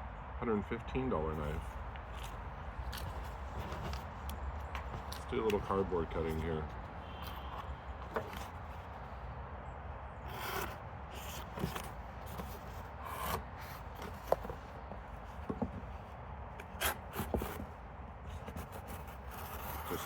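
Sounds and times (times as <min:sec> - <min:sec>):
knife blade slicing cardboard: 0:10.3 - 0:14.6, 0:16.6 - 0:17.7, 0:18.4 - 0:20.0.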